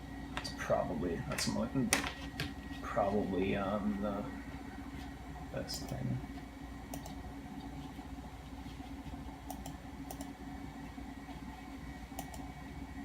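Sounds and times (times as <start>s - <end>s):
steady low hum: 0.0s - 13.0s
computer mouse clicks: 6.9s - 7.2s, 9.4s - 10.3s, 12.1s - 12.5s.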